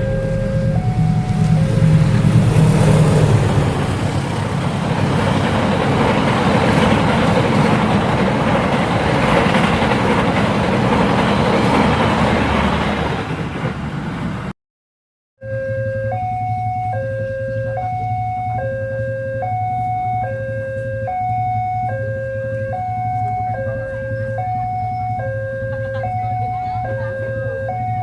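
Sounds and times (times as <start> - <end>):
two-tone electronic signal: 0.0 - 2.5, 15.4 - 28.0
low engine hum: 0.0 - 14.5
train wheels rumbling on rails: 0.0 - 14.5.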